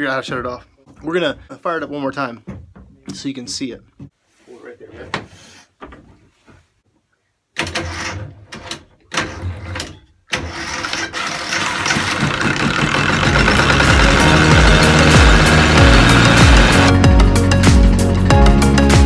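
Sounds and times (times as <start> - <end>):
diesel engine cranking: 10.4 - 17.0
diesel engine running: 12.8 - 16.9.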